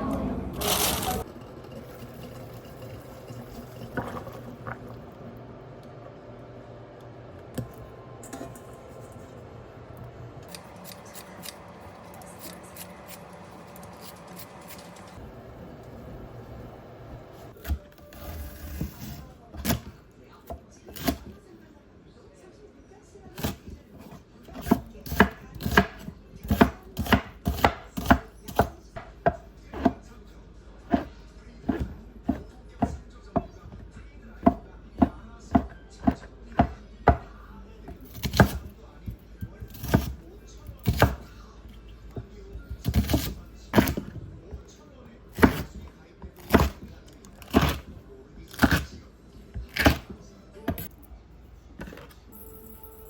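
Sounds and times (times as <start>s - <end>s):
faint background music: 16.7s - 53.0s
knife chopping on cutting board: 24.5s - 30.0s, 30.9s - 33.5s, 34.4s - 37.3s, 37.9s - 38.7s, 39.6s - 41.2s, 42.8s - 44.1s, 45.4s - 45.8s, 46.4s - 47.9s, 48.5s - 48.9s, 49.7s - 50.1s.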